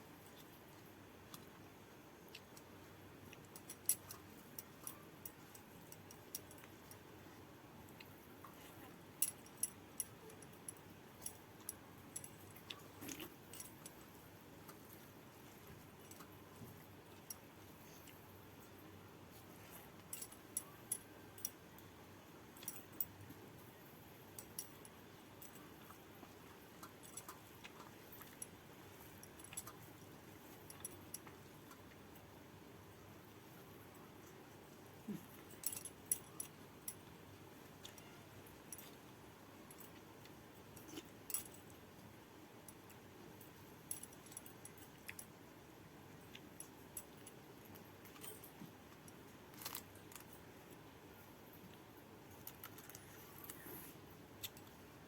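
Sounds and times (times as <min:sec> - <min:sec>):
chewing: 0:11.2 - 0:18.2.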